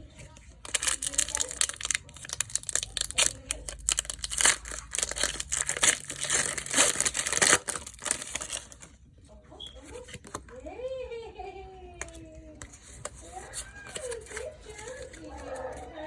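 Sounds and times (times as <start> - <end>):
foil wrapper crinkling and tearing: 0.5 - 9.0.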